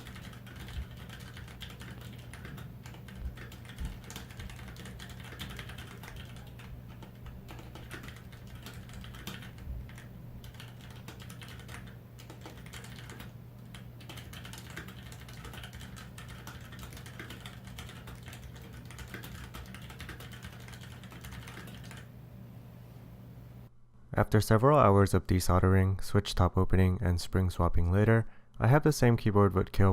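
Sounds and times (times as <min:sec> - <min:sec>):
fast typing on mechanical keyboard: 0:00.0 - 0:22.1
steady low hum: 0:00.0 - 0:29.7.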